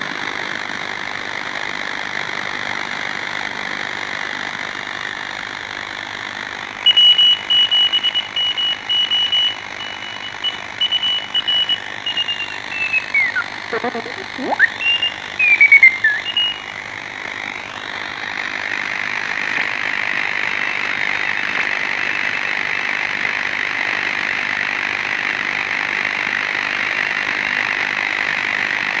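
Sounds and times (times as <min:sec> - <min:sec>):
radio band noise hiss: 0:04.6 - 0:26.2
radio whistling tones sliding in pitch: 0:06.8 - 0:16.8.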